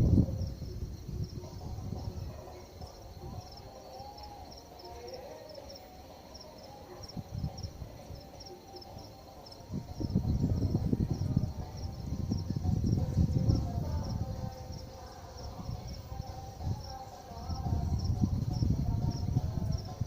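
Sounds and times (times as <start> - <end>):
wind rumble on microphone: 0.0 - 3.6, 7.0 - 8.5, 9.5 - 20.0
insects chirping: 0.0 - 20.0.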